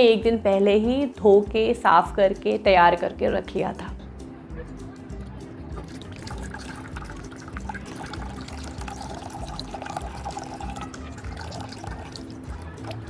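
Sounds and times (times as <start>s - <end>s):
water pouring and trickling: 5.7s - 13.0s.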